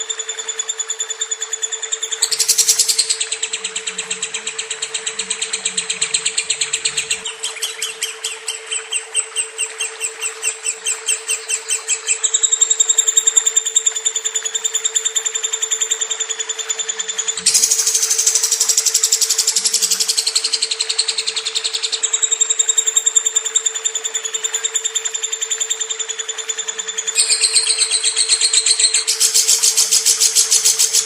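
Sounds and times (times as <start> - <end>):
bird trilling high chirps: 1.2 - 13.8, 17.1 - 23.4, 26.9 - 31.0
steady low hum: 1.8 - 13.6.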